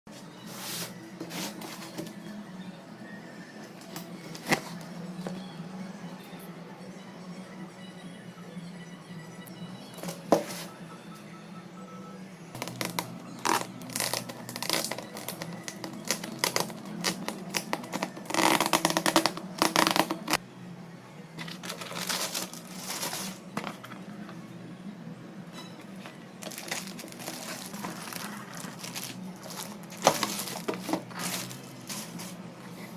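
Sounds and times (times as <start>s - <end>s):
packaging rustling and crinkling: 12.6s - 20.4s, 21.4s - 23.9s, 26.4s - 32.9s.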